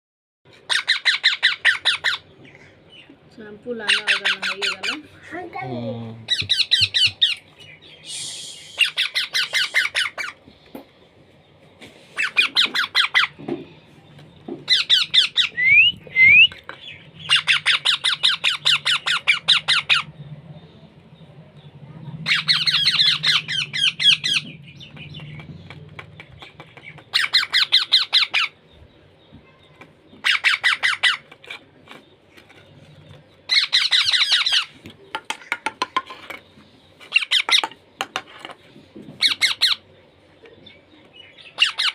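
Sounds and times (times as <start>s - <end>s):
short rising whistles: 8.0s - 9.0s
parrot rasping squawks: 8.8s - 10.4s.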